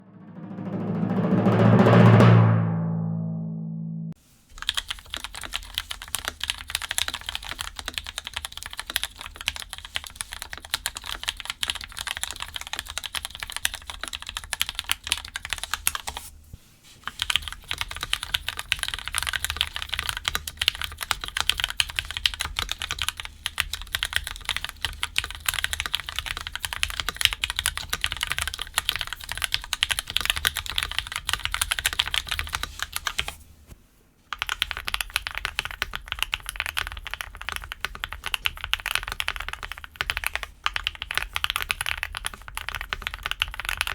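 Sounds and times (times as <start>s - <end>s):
low musical swell: 0.0s - 4.2s
fast mechanical keyboard typing: 4.6s - 16.0s, 17.2s - 33.2s, 34.3s - 43.9s.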